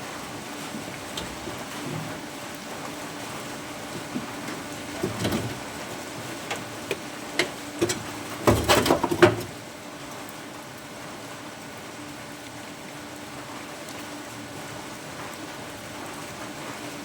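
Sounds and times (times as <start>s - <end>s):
metal clicks and knocks: 4.9s - 5.8s, 6.5s - 9.5s.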